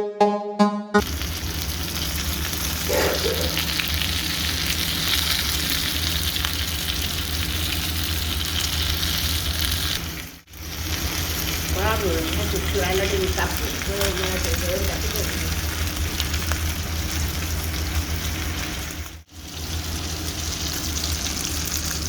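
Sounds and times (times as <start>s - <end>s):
electronic music jingle: 0.0s - 1.1s
fish frying in hot oil: 1.0s - 22.0s.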